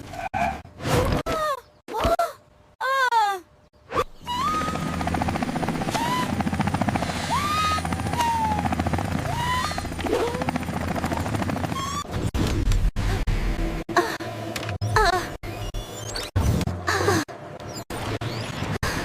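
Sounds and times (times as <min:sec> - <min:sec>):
helicopter rotor chopping: 0:04.2 - 0:12.1.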